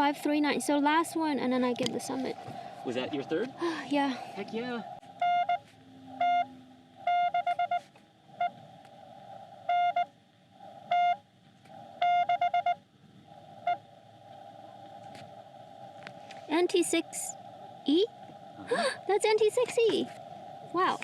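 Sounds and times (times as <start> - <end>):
morse code tone: 5.2 - 8.6, 9.7 - 10.1, 10.9 - 11.2, 12.0 - 12.8.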